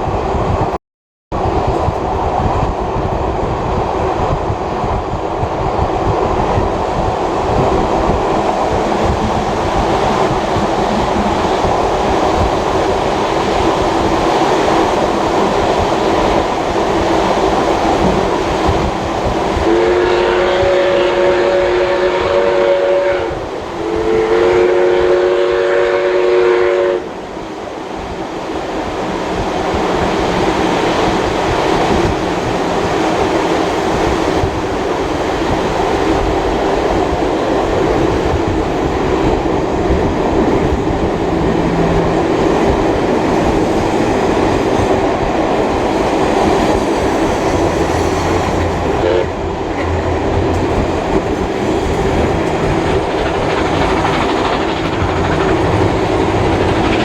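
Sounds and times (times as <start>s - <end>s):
steam locomotive whistle chord: 19.6s - 27.1s, 49.0s - 49.4s
train carriages rolling on track: 29.0s - 57.0s.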